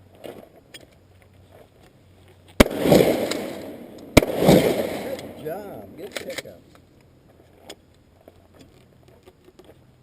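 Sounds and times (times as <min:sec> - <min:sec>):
loud blasts with rolling rumble: 0:02.6 - 0:06.4.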